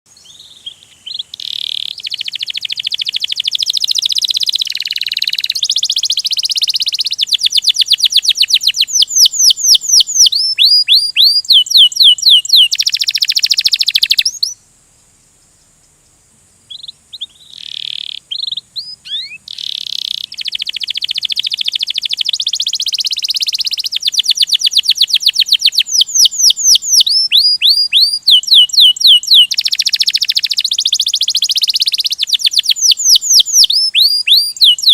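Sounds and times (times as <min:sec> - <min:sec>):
canary singing trills: 0:00.1 - 0:14.6, 0:16.7 - 0:34.9.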